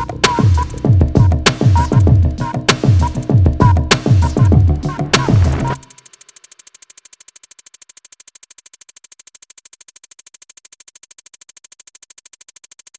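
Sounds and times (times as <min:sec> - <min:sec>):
fast synth pulse: 0:00.0 - 0:06.2
drum machine beat: 0:00.0 - 0:09.8.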